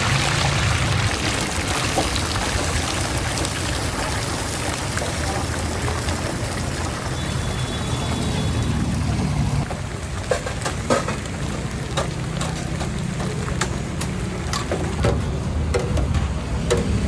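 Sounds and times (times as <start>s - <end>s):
sharp clacks and knocks: 10.2s - 17.0s.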